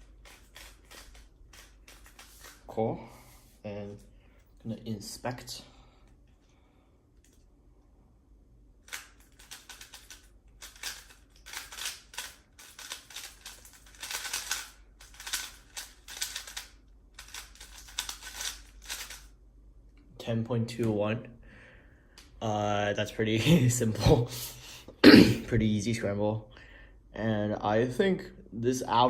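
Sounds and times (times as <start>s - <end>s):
puzzle cube plastic clicking: 8.9s - 19.3s.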